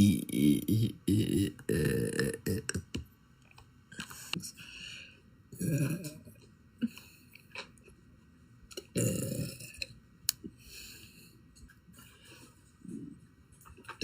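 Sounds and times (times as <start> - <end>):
woman burping: 5.6 - 6.3.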